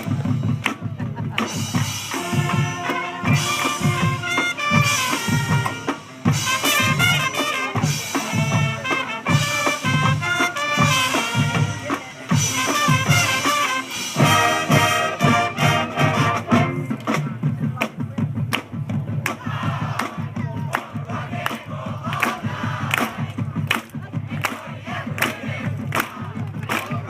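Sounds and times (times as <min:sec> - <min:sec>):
drumline beat: 0:00.0 - 0:27.0
brass holding sustained notes: 0:02.1 - 0:16.9.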